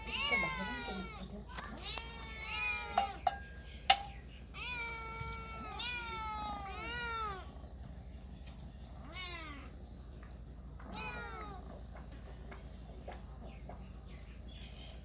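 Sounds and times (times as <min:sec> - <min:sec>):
cat meowing: 0:00.0 - 0:03.2, 0:04.5 - 0:07.6, 0:09.0 - 0:09.7, 0:10.8 - 0:11.8.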